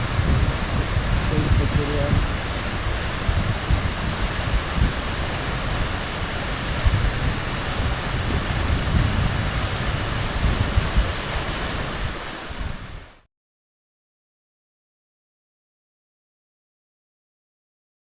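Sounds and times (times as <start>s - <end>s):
wind buffeting microphone: 0.0s - 13.1s
waterfall rushing: 0.0s - 13.2s.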